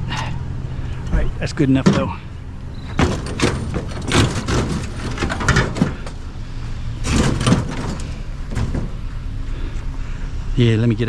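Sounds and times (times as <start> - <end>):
low vehicle hum: 0.0 - 11.0
scrap metal knocking and rattling: 1.0 - 6.4, 7.0 - 9.4.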